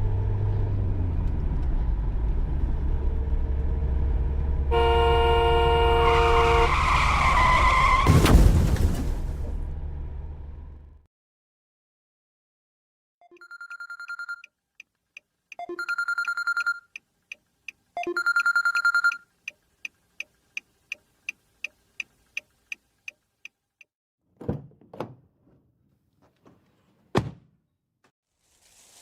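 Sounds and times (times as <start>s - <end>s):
telephone bell ringing: 13.2s - 14.4s, 15.6s - 16.9s, 18.0s - 19.2s
clock ticking: 14.4s - 23.9s.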